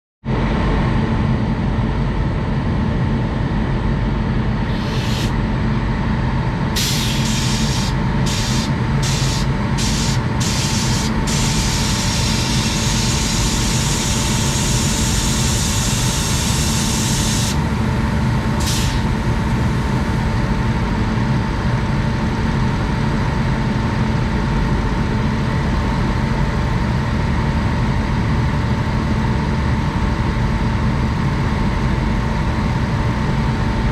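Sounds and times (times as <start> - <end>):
locomotive blowers whirring hum: 4.5 - 5.6, 6.6 - 20.9
compressed air hissing: 4.6 - 5.4, 6.8 - 20.4.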